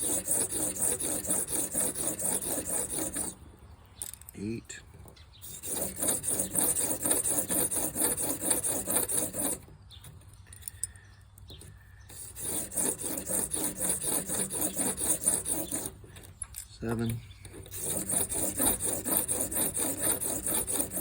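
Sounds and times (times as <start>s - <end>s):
blade rubbing on abrasive: 0.0s - 3.4s, 5.4s - 9.6s, 12.1s - 16.3s, 17.5s - 21.0s.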